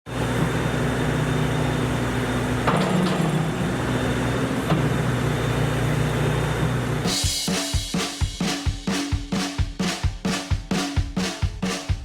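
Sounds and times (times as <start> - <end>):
heavy machinery humming: 0.1 - 7.1.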